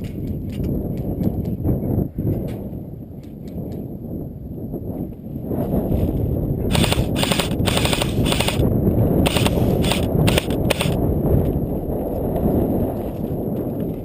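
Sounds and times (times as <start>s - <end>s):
wind rumble on microphone: 0.0s - 14.0s
airsoft gun rapid shots: 6.7s - 8.6s, 9.3s - 11.0s.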